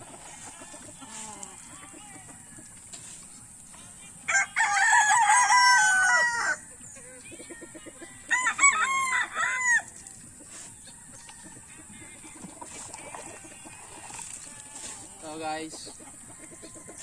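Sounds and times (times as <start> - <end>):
rooster crowing: 4.3 - 6.6, 8.3 - 9.9, 16.1 - 17.0.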